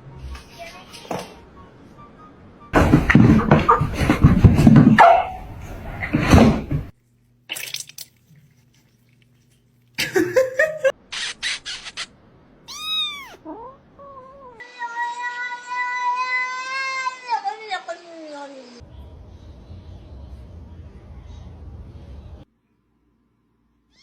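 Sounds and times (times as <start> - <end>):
cat meowing: 12.7 - 17.0
cat yowling: 12.7 - 17.3.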